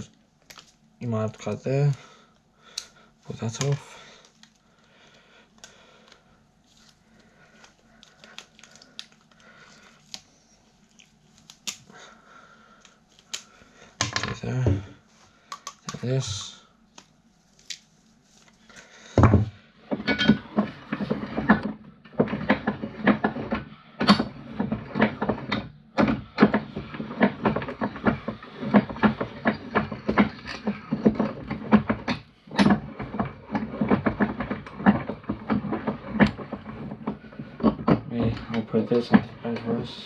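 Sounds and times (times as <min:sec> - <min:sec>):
tools clicking and knocking on metal: 0:19.2 - 0:39.6.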